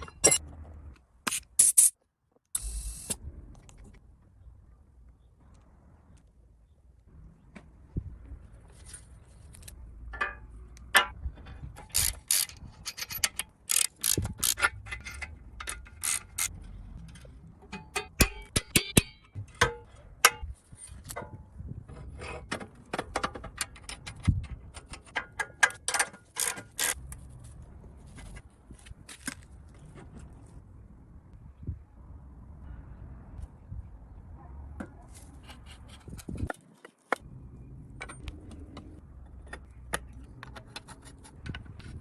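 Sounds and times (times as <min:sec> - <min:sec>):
metal tools clinking: 0:00.0 - 0:00.5.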